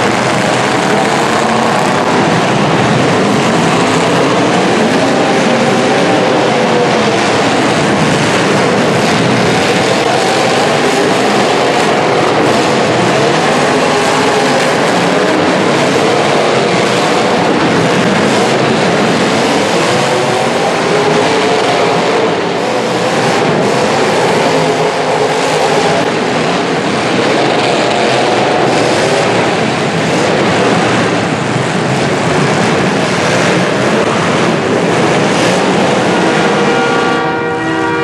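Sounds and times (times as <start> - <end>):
car engines revving: 0.0 - 38.0.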